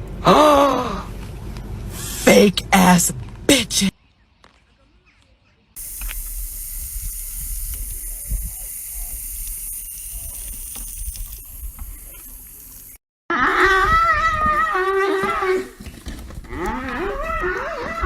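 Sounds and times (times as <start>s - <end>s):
steady hissing with low rumble: 5.8s - 13.0s.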